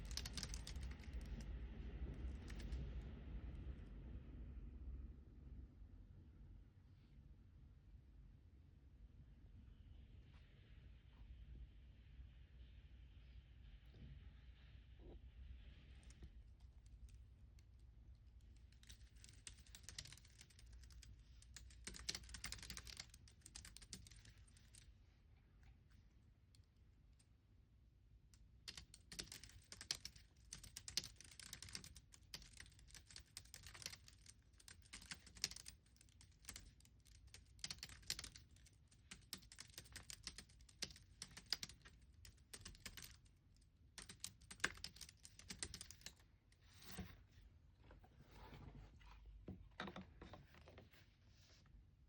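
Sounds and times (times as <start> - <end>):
keyboard typing: 0.0 - 1.4, 18.5 - 24.8, 28.7 - 43.3, 44.0 - 46.2.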